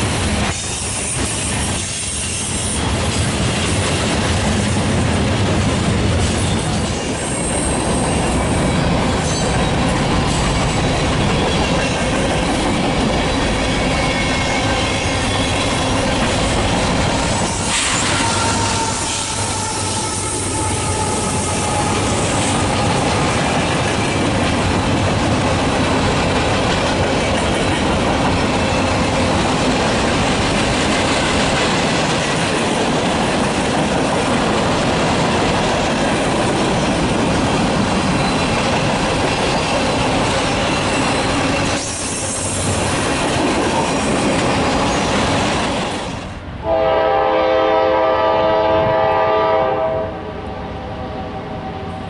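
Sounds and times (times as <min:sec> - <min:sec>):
freight train wheels on rail: 0:00.0 - 0:52.0
train horn: 0:17.1 - 0:23.1, 0:46.6 - 0:51.9
locomotive air horn chord: 0:46.6 - 0:50.5.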